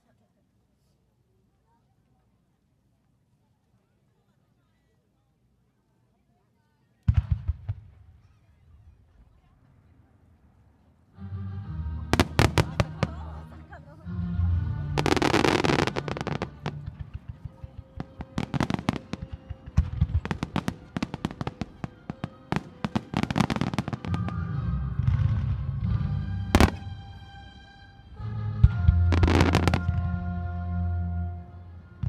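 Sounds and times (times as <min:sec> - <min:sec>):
fireworks crackling and bursting: 0:12.1 - 0:13.7, 0:14.8 - 0:27.7, 0:28.6 - 0:30.3.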